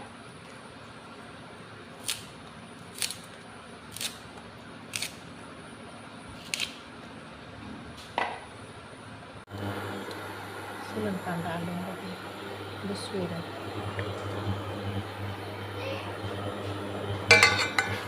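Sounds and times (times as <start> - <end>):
faint steady hum: 8.6 - 18.0
kitchen utensils clicking: 17.3 - 18.0.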